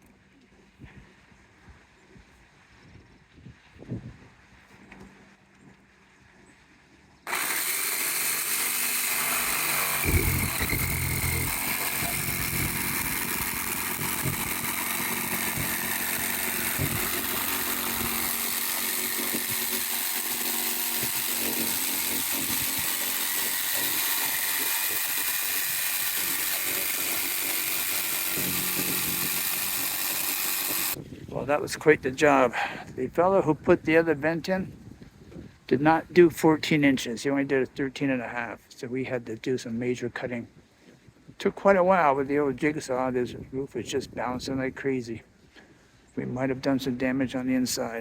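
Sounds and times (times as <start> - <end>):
jigsaw cutting sheet metal: 7.3 - 31.0.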